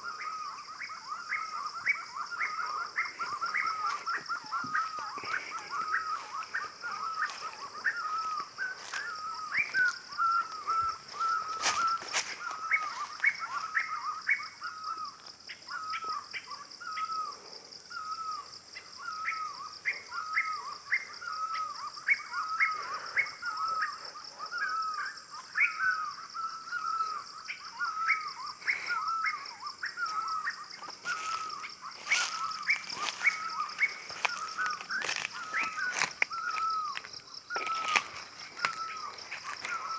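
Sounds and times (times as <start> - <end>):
bird calling in hooked notes: 27.9 - 39.9.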